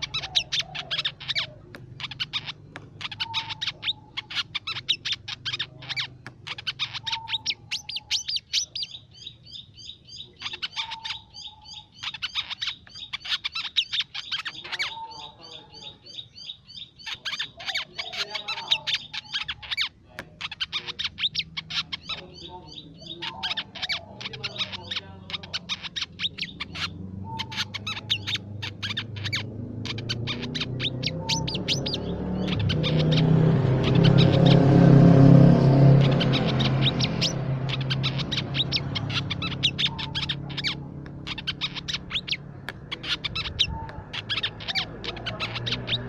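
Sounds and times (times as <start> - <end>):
bird high sharp chirps: 0.0 - 46.0
low drone: 29.5 - 42.5.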